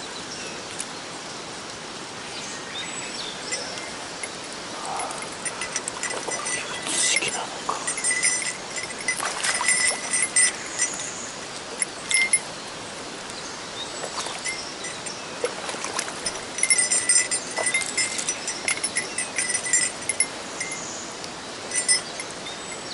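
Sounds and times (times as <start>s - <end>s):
stream water rushing: 0.0s - 22.9s
small metal bell jingling: 3.5s - 12.5s, 14.3s - 21.0s, 21.7s - 22.9s.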